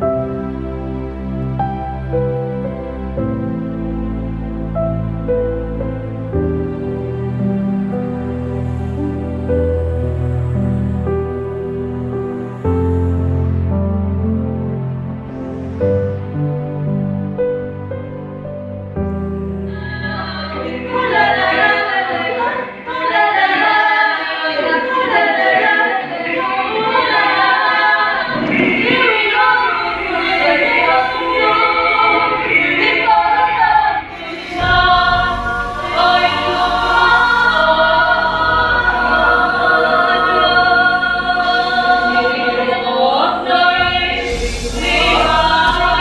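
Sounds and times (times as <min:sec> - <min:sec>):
deep low drone: 0:03.2 - 0:19.8, 0:34.0 - 0:39.2, 0:43.8 - 0:46.0
group of voices chanting: 0:20.6 - 0:46.0.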